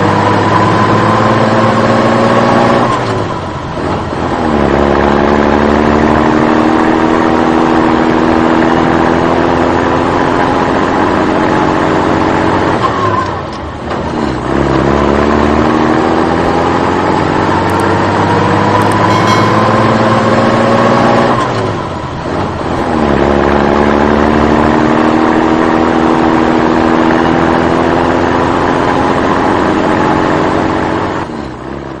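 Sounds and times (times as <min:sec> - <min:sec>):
motor vehicle engine revving: 0:13.8 - 0:31.9.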